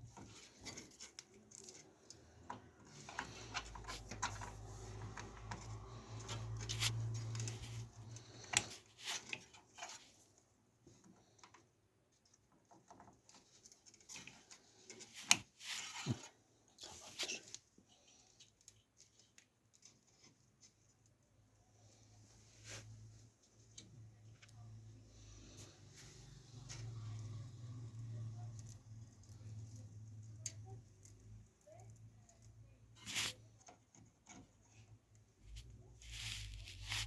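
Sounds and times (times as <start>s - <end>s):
clicks taps and rustles of parts: 0.1s - 10.2s.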